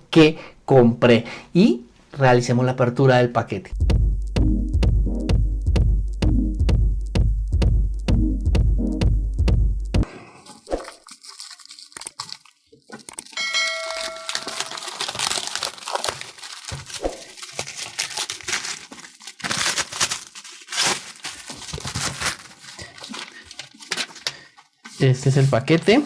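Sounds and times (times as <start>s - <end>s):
wrapping tearing and rustling: 10.5s - 26.0s
ringing ding: 13.4s - 14.8s.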